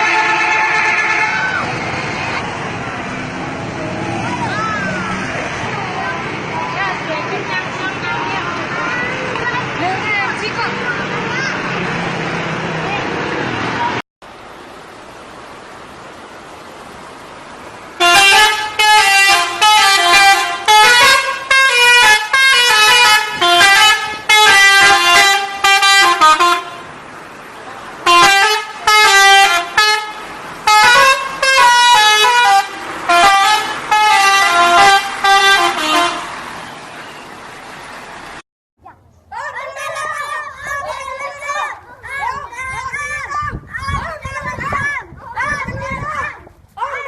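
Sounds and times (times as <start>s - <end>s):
musical multi-tone air horn: 0.0s - 1.5s, 18.0s - 26.9s, 28.0s - 36.4s.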